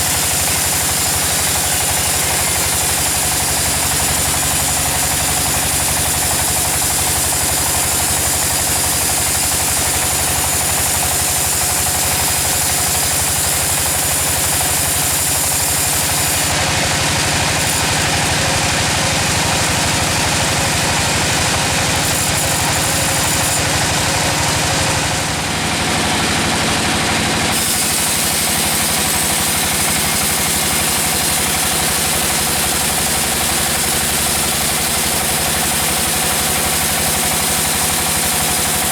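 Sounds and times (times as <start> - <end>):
engine hum: 13.6 - 33.5.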